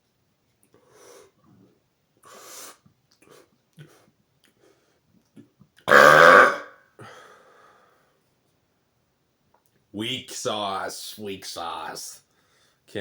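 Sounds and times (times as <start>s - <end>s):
man burping: 5.9s - 6.7s.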